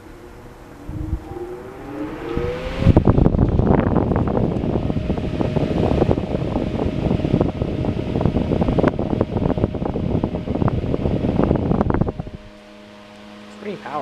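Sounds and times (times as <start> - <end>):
fan wind buffeting microphone: 0.0 - 14.0.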